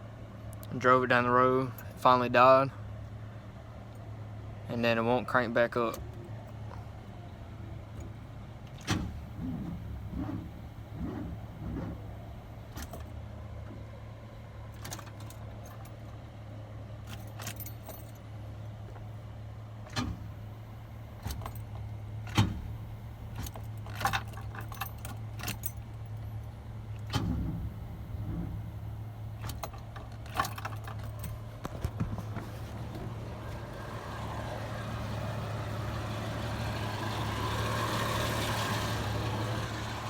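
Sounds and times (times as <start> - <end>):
steady low hum: 8.9 - 15.9, 18.8 - 36.4
keys jangling on a key ring: 23.4 - 26.1
ignition clicks: 26.8 - 33.7.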